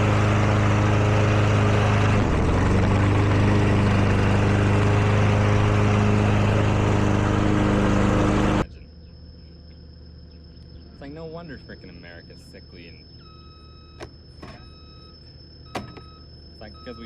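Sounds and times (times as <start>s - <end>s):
lawn mower engine running: 0.0s - 8.6s, 15.5s - 17.0s.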